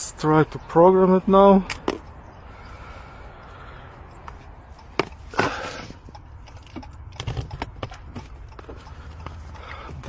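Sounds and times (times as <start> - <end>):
sharp clicks and knocks: 4.2 - 10.0.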